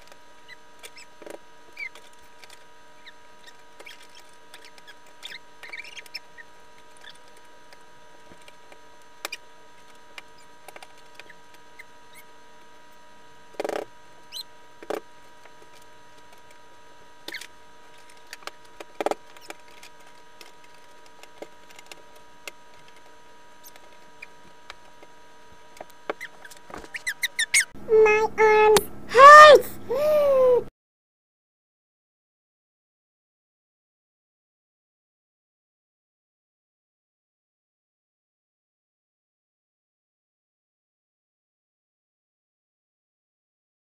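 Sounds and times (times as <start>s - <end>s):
steady background hum: 0.0s - 30.7s.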